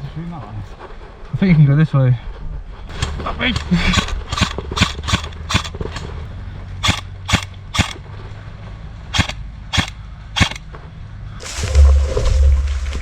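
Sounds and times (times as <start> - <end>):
airsoft gun shots: 6.8 - 8.0, 9.1 - 10.6.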